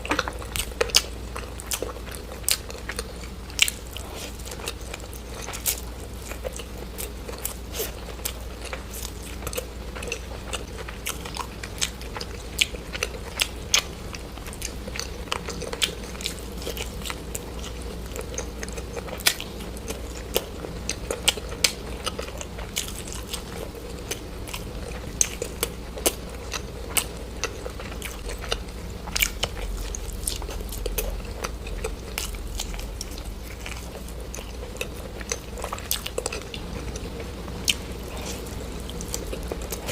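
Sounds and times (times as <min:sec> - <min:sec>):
crunchy chewing: 0:00.0 - 0:39.9.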